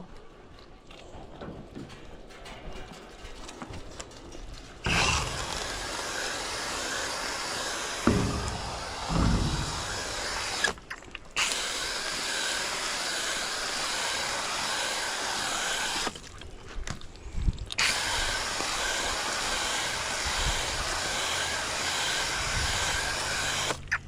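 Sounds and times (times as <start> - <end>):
sprayer hissing: 4.9 - 10.8, 11.4 - 16.2, 17.8 - 23.9
low thump: 8.1 - 10.5.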